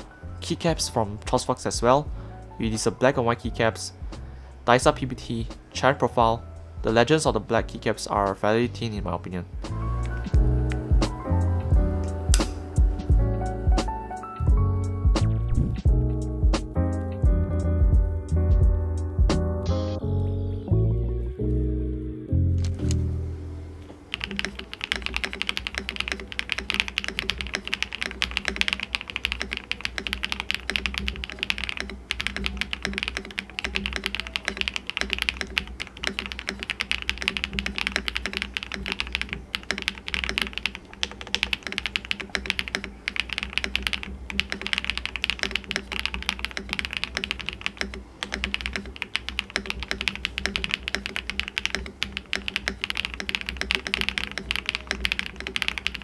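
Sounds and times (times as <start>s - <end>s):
fast typing on mechanical keyboard: 24.1s - 56.0s.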